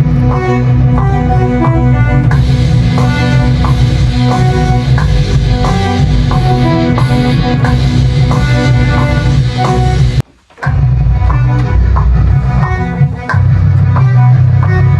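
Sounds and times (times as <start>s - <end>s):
rock music with electric guitar: 0.0s - 14.9s.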